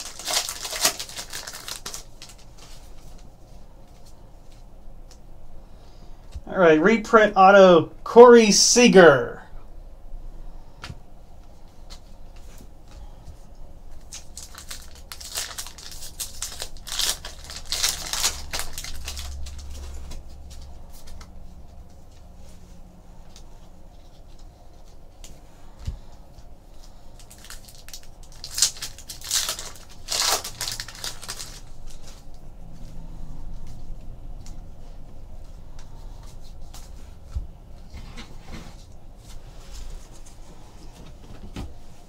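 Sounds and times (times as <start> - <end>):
wrappers torn and crumpled: 0.0 - 3.0, 13.9 - 21.3, 26.8 - 32.4.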